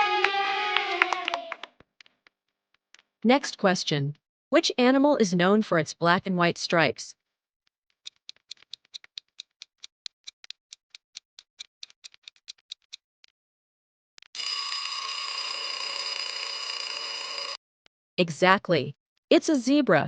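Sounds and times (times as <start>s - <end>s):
alarm ringing: 14.4s - 17.6s.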